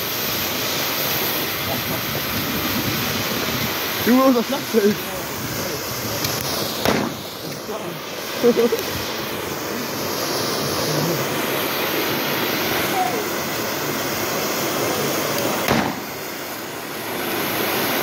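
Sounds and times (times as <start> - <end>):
steady rushing outdoor noise: 0.0 - 18.0
firework bang: 6.2 - 7.6, 15.4 - 16.4.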